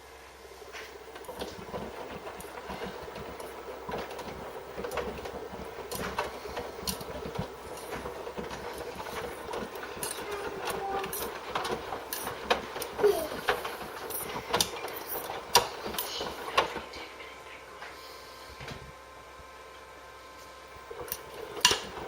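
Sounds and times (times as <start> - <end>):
washing machine humming: 0.0 - 22.0
washing machine clicks and knocks: 1.1 - 16.9, 21.0 - 22.0.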